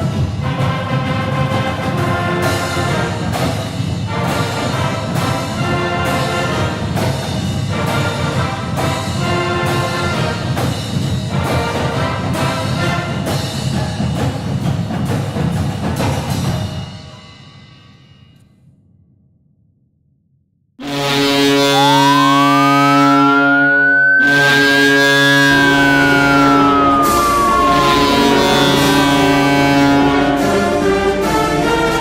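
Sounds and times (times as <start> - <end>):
brass band with drums: 0.0 - 17.4.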